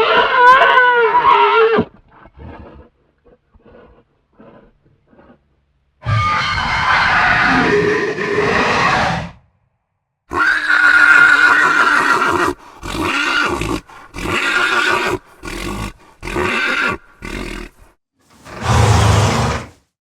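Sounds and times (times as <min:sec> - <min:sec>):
horse-like whinnies: 0:06.0 - 0:09.4, 0:18.4 - 0:19.8.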